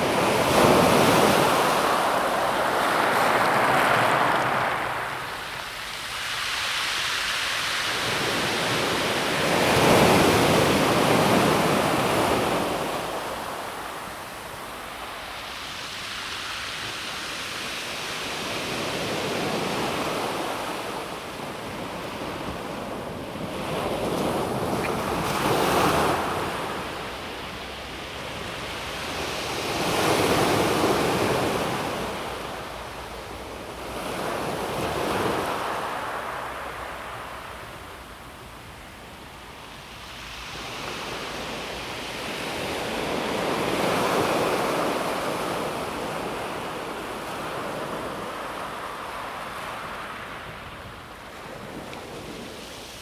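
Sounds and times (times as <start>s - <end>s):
waves breaking on pebble beach: 0.0s - 11.7s.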